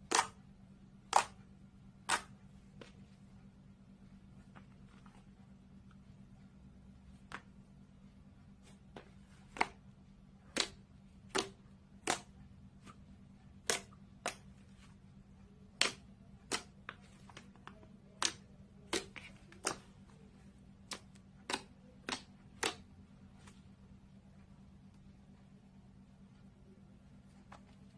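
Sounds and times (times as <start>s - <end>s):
faint low hum: 0.0s - 27.9s.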